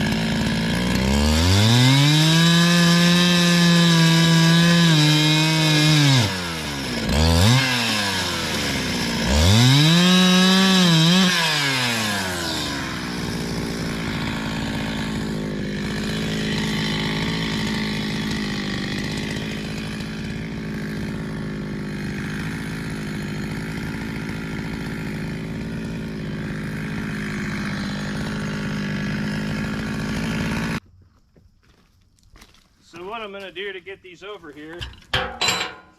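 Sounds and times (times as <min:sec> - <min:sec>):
sawmill gas engine revving: 0:00.0 - 0:30.8.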